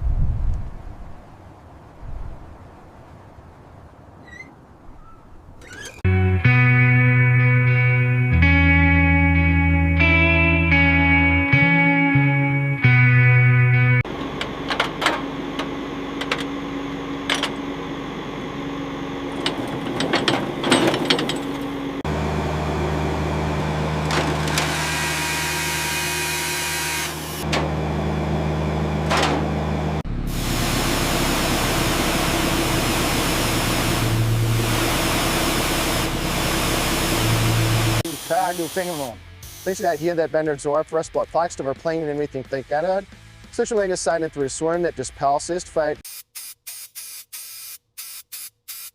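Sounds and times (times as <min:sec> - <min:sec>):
motor hum: 0:14.0 - 0:38.0
clicks and knocks: 0:19.3 - 0:21.7
loud steady hiss: 0:38.0 - 0:40.2.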